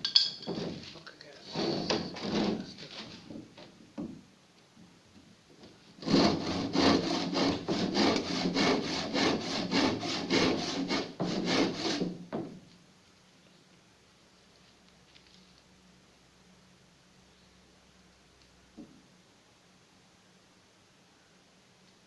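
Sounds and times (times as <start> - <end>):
hand saw cutting wood: 0.5 - 2.9, 6.0 - 12.2.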